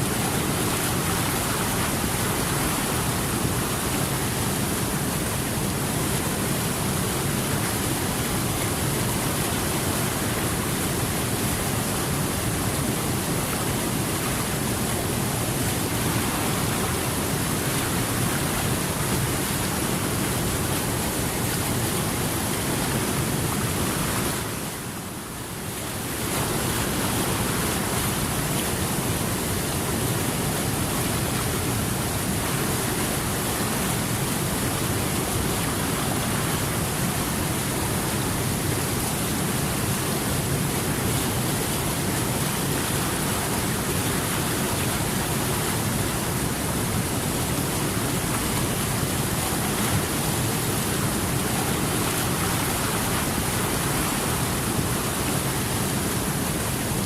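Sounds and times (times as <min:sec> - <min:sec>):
water rushing: 0:00.0 - 0:57.0.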